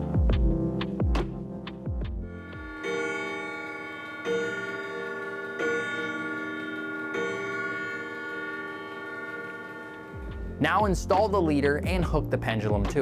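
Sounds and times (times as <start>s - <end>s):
clock chime rods ringing: 2.3s - 12.1s.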